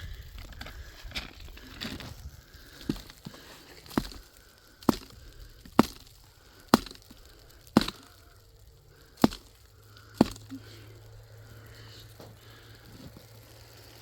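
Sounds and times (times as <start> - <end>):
chopping strikes: 3.9 - 6.1, 6.7 - 8.2, 9.2 - 9.6, 10.2 - 10.6.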